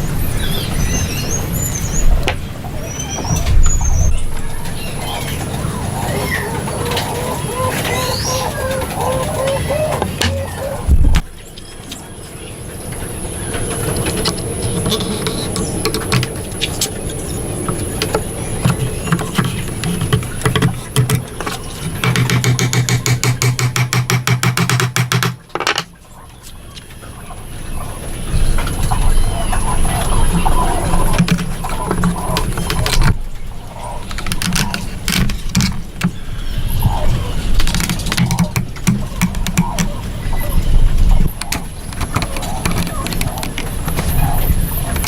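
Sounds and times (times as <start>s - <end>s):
steady low rumble: 0.0s - 6.1s, 10.1s - 11.6s
small birds chirping: 0.0s - 24.1s, 25.9s - 45.0s
sharp knocks: 10.0s - 11.3s, 18.6s - 25.9s.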